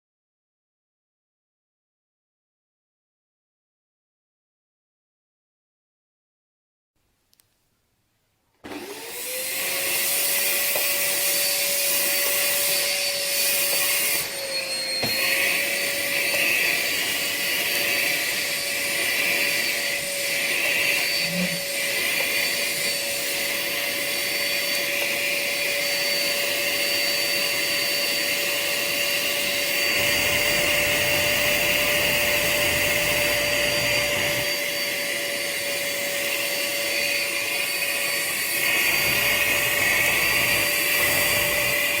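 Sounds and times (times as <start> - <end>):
vacuum cleaner running: 8.6 - 42.0.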